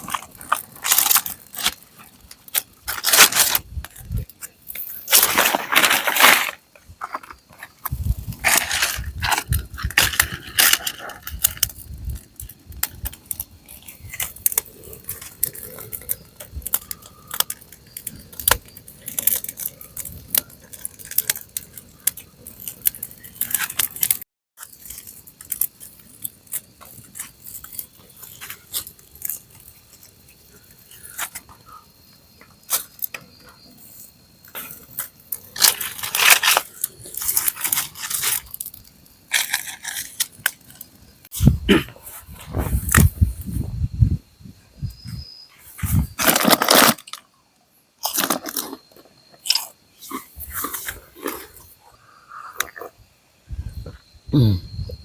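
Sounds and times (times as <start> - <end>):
handling clicks and rustles: 0.0 - 31.6.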